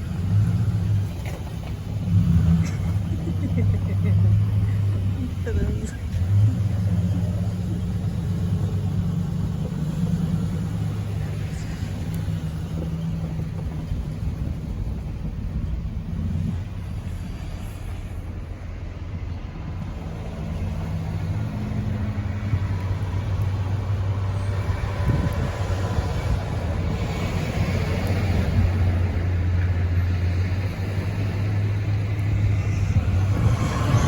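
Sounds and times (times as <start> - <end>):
vehicle engine humming: 0.0 - 34.0.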